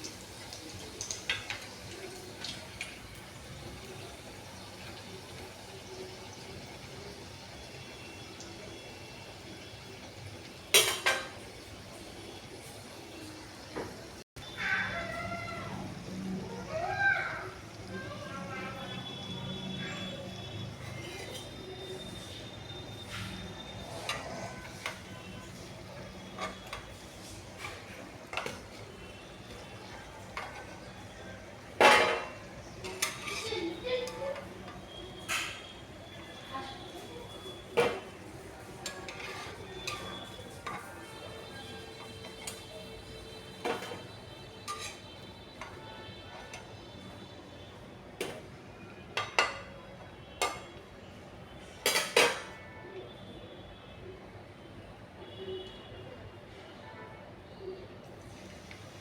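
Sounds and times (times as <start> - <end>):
metal utensils clinking on cookware: 0.1 - 3.0, 10.5 - 11.6, 20.8 - 22.2, 23.0 - 35.7, 37.8 - 46.8, 49.1 - 49.8, 50.4 - 50.8, 51.8 - 52.6.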